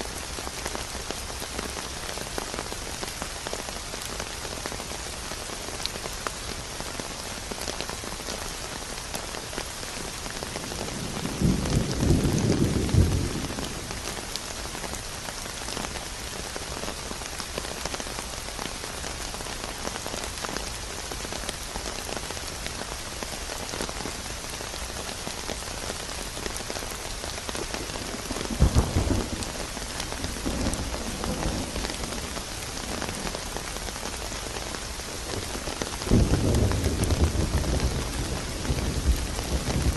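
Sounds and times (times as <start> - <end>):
heavy rain: 0.0 - 39.9
distant thunder rumbling: 10.8 - 14.0, 27.8 - 33.4.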